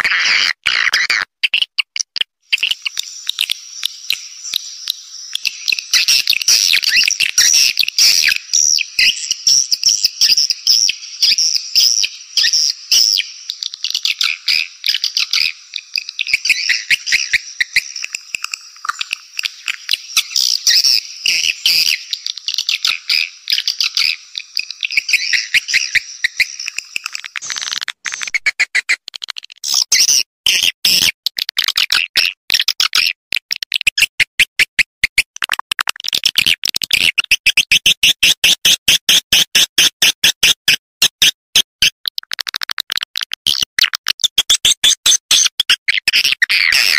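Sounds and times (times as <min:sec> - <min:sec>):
sharp clicking chirps: 0:00.8 - 0:46.9
birds twittering: 0:02.5 - 0:27.7.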